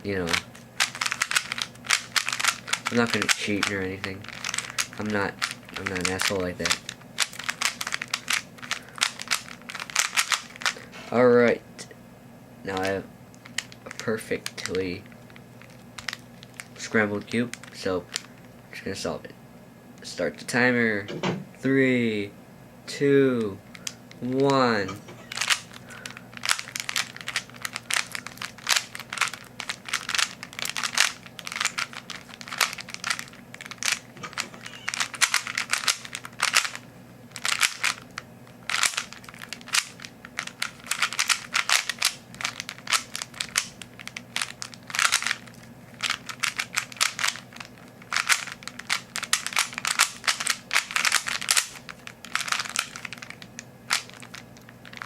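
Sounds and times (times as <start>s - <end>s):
puzzle cube turning clicks: 0.2s - 10.9s, 23.7s - 38.0s, 38.7s - 55.0s.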